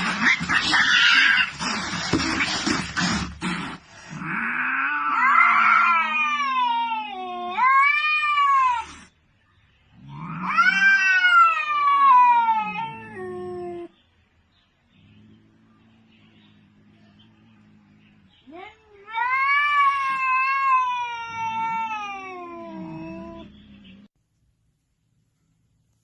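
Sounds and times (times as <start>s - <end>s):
cat yowling: 0.0s - 1.6s, 4.2s - 9.1s, 10.1s - 13.9s, 18.6s - 23.5s.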